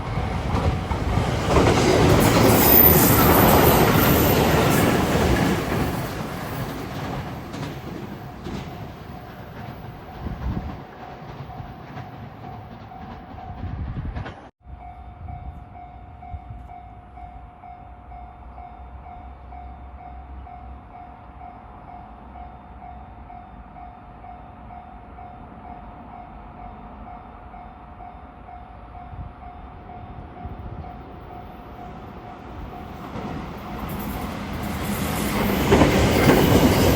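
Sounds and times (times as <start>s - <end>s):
train rumble and rattle: 0.0s - 18.1s, 29.0s - 36.9s.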